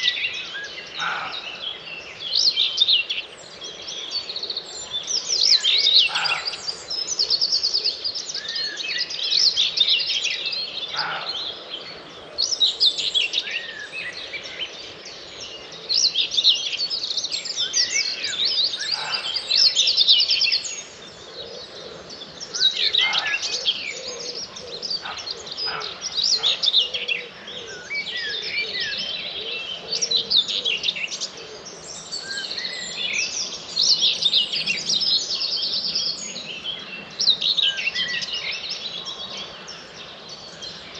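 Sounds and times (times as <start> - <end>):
songbirds singing: 0.0 - 40.9.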